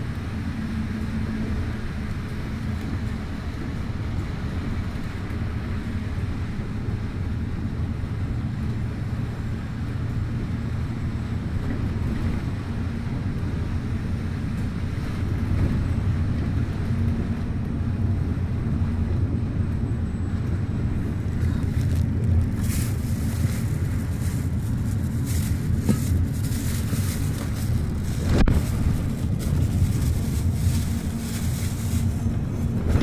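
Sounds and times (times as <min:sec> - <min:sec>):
bus engine and road rumble: 0:00.0 - 0:33.0.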